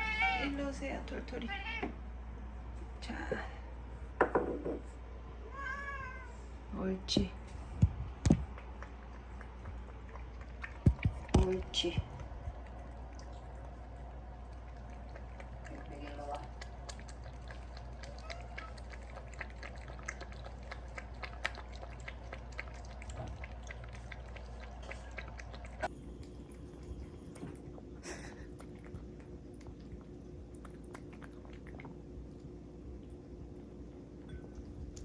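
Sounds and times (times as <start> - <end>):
cat crunching food: 7.9 - 33.2.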